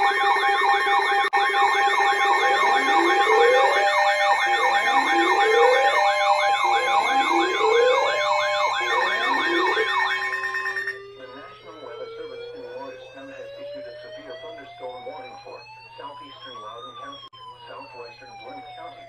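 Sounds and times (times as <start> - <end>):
fast warbling siren: 0.0 - 19.0
rising siren wails: 0.0 - 19.0
steady alert tones: 0.0 - 19.0.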